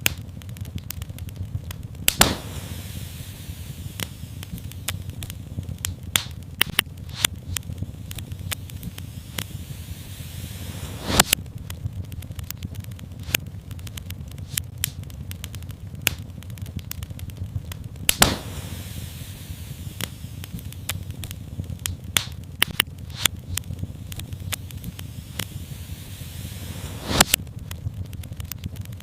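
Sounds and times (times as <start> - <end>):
wood fire crackling and popping: 0.0 - 29.0
brief hiss: 2.2 - 4.7, 8.7 - 11.4, 18.1 - 20.7, 24.7 - 27.4.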